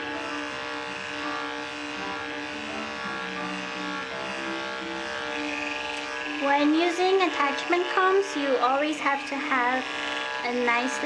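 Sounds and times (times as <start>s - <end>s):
music playing: 0.0s - 7.9s
dog clipper buzzing: 0.0s - 11.0s.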